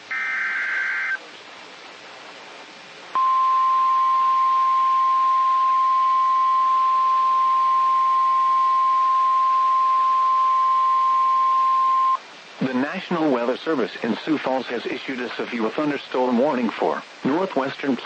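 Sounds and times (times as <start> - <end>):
faint radio hiss: 0.0 - 18.0
high steady warning beep: 3.2 - 12.2.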